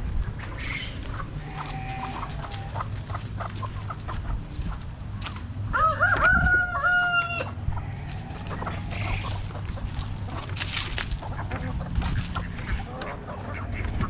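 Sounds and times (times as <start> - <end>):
hens clucking: 0.0 - 14.0
rooster crowing: 5.7 - 9.4.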